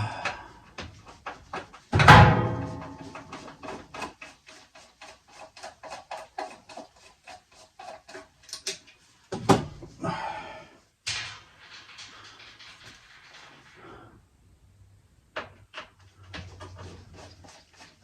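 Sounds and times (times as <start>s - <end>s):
scraping and rustling: 0.9s - 10.0s, 11.1s - 14.1s, 15.5s - 18.0s.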